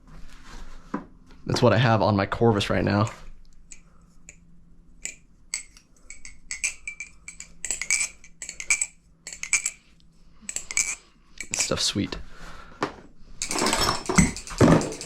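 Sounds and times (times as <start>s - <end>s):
metal butterfly knife clicking: 5.0s - 9.8s.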